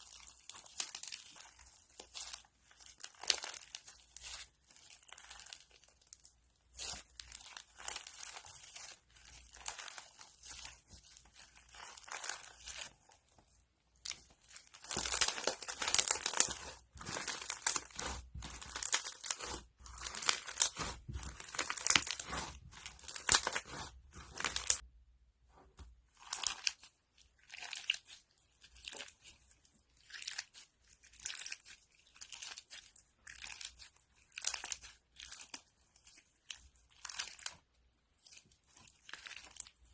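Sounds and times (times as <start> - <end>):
crunchy slime crackling and popping: 0.0 - 24.8, 26.1 - 39.9.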